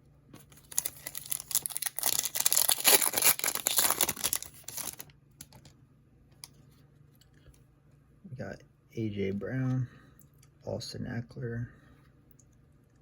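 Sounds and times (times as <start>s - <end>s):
wrapper tearing and crinkling: 0.5s - 5.7s.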